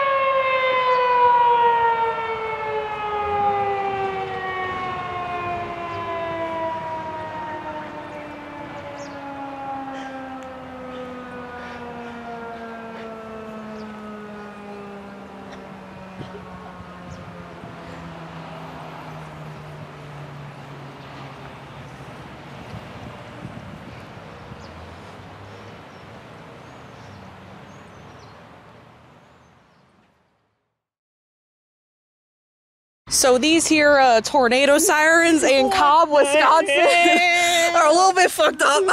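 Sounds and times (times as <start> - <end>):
tornado siren winding down: 0.0 - 25.6, 34.6 - 38.9.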